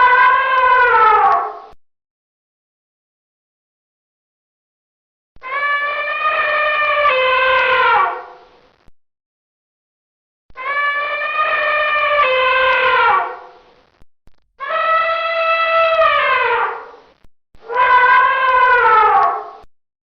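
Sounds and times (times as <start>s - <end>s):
elephant trumpeting: 5.5s - 8.3s, 10.6s - 13.5s, 14.6s - 17.0s, 17.6s - 19.6s.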